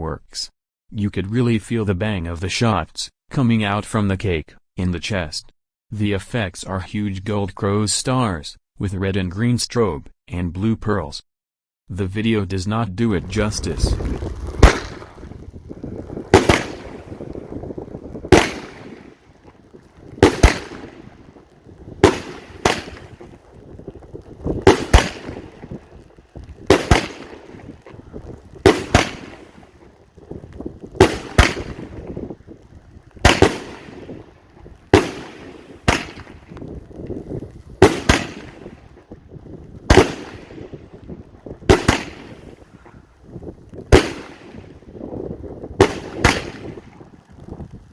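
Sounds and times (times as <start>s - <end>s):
firework cake bangs: 13.1s - 39.2s, 39.8s - 40.9s, 41.6s - 42.9s, 43.8s - 47.1s.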